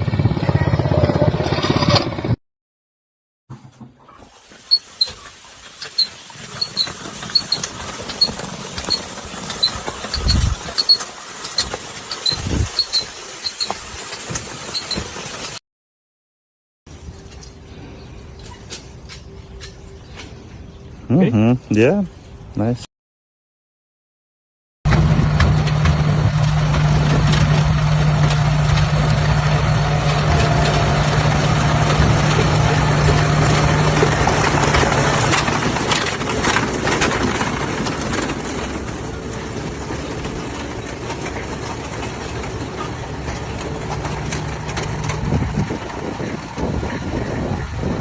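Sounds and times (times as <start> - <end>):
rattling and knocking: 24.9 - 47.6
engine humming: 24.9 - 48.0.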